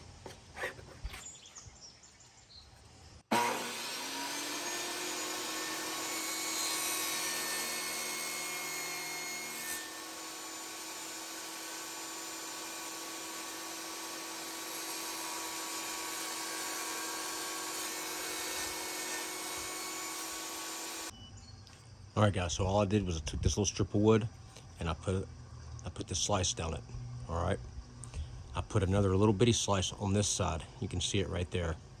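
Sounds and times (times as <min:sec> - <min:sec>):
electric power saw cutting wood: 0:03.3 - 0:21.1.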